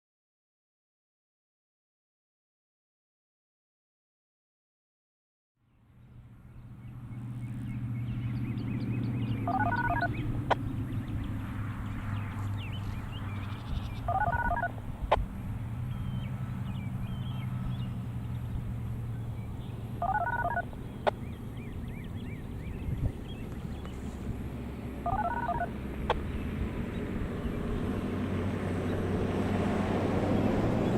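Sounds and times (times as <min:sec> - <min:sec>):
distant road traffic rumble: 0:05.6 - 0:30.9
small birds chirping: 0:06.0 - 0:28.2
stepped beeping tones: 0:09.5 - 0:10.2, 0:14.1 - 0:14.8, 0:20.0 - 0:20.7, 0:25.1 - 0:25.7.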